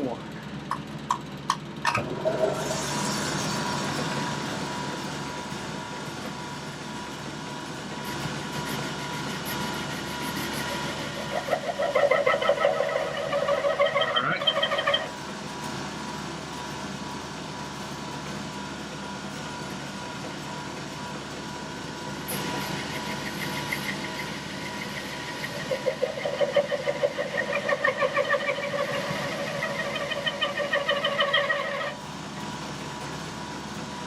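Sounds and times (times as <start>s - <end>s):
metal lathe running: 2.0s - 34.0s
pulsing squeal from lathe cut: 2.1s - 5.2s, 8.0s - 15.2s, 22.1s - 32.1s.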